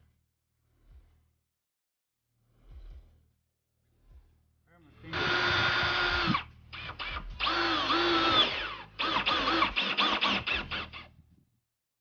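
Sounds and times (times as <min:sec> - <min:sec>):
power drill drilling into metal: 0:05.1 - 0:11.1.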